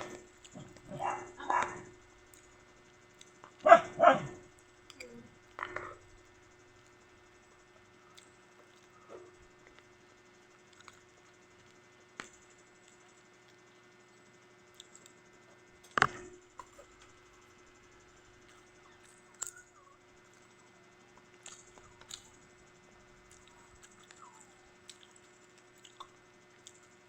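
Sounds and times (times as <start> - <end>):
faint steady hum: 0.0 - 27.0
knocks and clicks of eating: 15.8 - 17.1.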